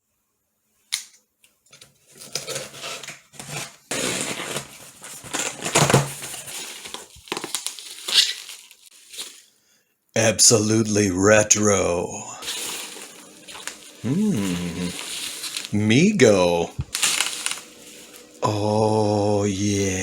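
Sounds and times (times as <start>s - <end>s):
cardboard and packing rustling: 1.7s - 9.6s, 12.4s - 18.5s.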